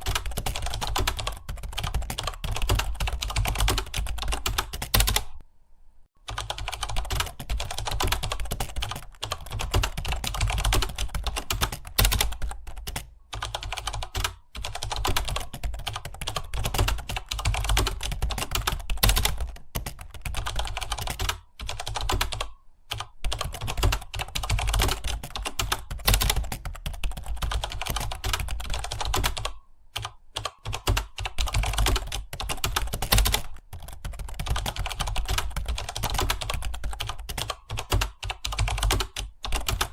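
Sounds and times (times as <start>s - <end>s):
keyboard typing: 0.0s - 5.4s, 6.2s - 39.9s.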